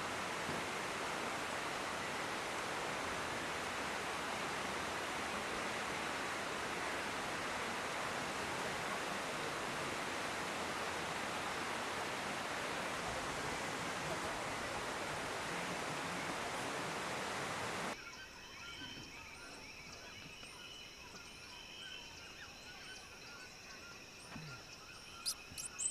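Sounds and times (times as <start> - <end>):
insects trilling: 18.0 - 25.9
short chirps: 24.3 - 25.9.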